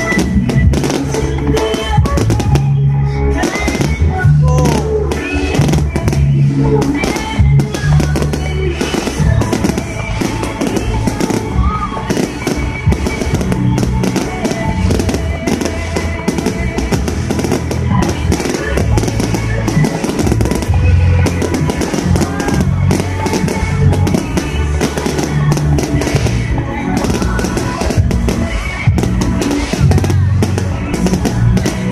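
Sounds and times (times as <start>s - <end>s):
fireworks bursting and crackling: 0.0s - 31.9s
music with heavy bass beat: 0.0s - 31.9s.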